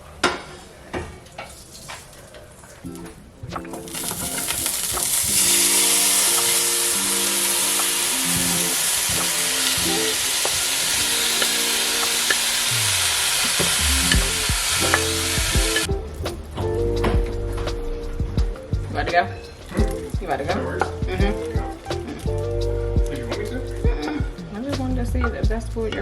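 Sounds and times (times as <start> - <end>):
background music: 2.8 - 26.0
food sizzling in a pan: 3.8 - 15.9.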